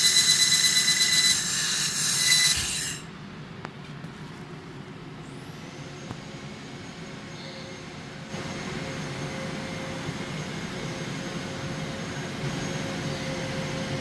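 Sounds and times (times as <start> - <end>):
laser welding machine humming: 0.0 - 3.1.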